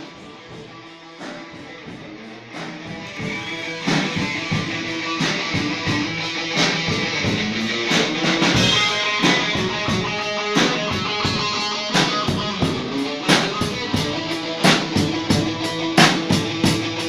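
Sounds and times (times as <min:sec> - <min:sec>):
instrumental music with beat: 0:00.0 - 0:17.0.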